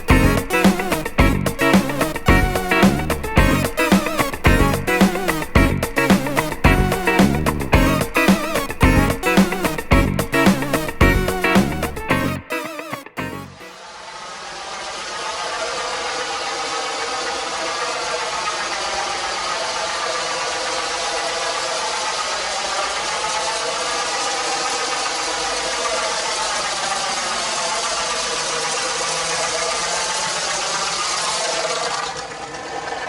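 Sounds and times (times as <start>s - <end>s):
toy train rumbling in pipe: 14.1s - 33.0s.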